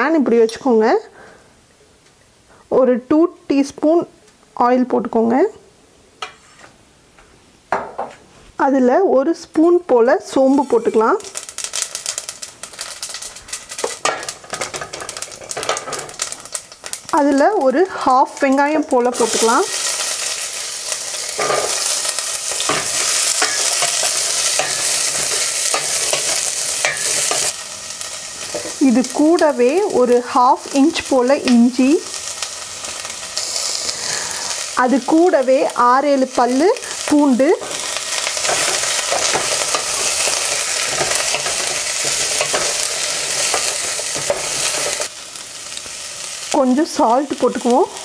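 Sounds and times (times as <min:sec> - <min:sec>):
seeds sizzling in hot oil: 0:09.2 - 0:48.0
spatula scraping pan: 0:19.1 - 0:27.6, 0:37.6 - 0:45.1.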